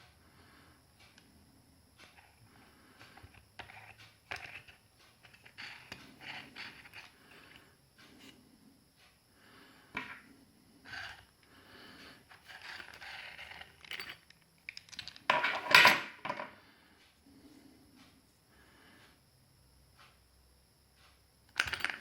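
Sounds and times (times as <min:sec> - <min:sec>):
small hard objects clicking and clinking: 0:12.3 - 0:16.0, 0:21.5 - 0:22.0.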